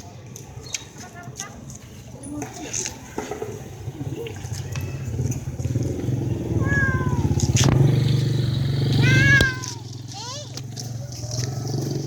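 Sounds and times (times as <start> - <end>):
steady low rumble: 3.6 - 9.8
cat meowing: 6.5 - 7.5.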